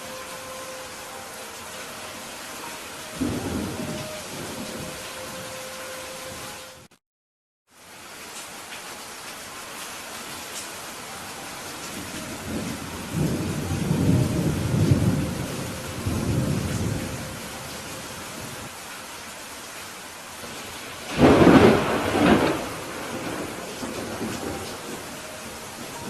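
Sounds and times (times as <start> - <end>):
steady rain: 0.0 - 7.0, 7.7 - 26.0
rolling thunder: 3.2 - 5.5, 12.0 - 18.6, 21.0 - 26.0
sharp thunderclap: 21.1 - 25.0.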